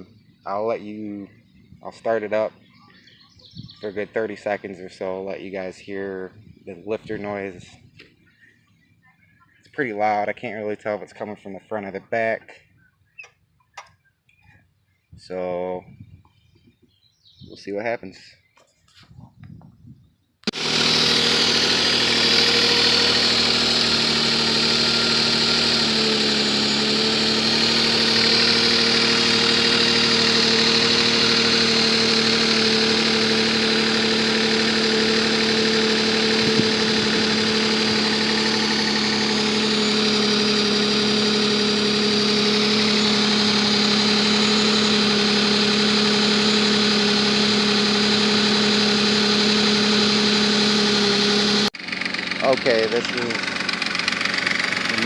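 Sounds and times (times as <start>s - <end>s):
car engine idling: 20.4s - 55.0s.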